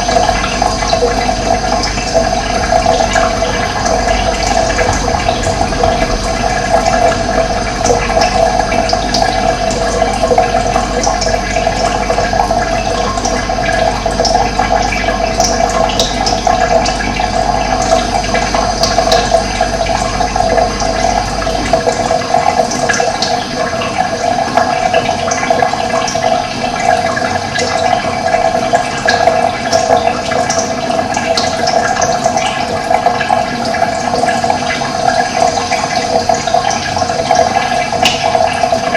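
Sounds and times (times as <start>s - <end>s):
running water: 0.0s - 38.9s
low rumble: 1.1s - 12.1s.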